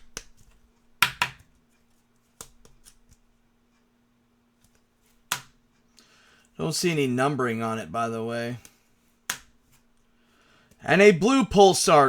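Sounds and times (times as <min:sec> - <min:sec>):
trading cards snapping and tapping: 0:00.0 - 0:01.5, 0:02.4 - 0:03.2, 0:04.6 - 0:05.6, 0:08.6 - 0:09.9
faint steady hum: 0:00.0 - 0:12.0.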